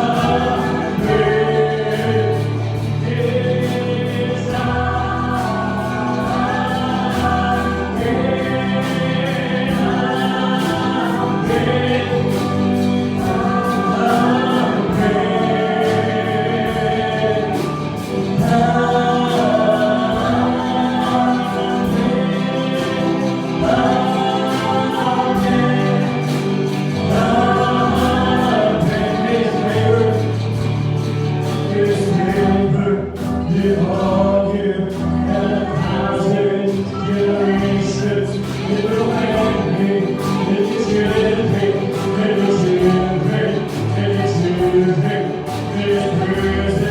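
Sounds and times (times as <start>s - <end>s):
steady beat: 0.0s - 31.6s
choir singing gospel music: 0.0s - 46.9s
instrumental accompaniment: 0.0s - 46.9s.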